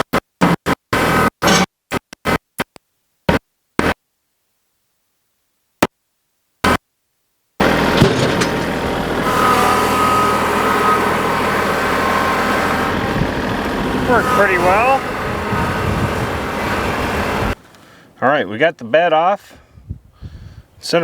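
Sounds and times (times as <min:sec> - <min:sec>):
vehicle engine running: 0:07.6 - 0:17.6.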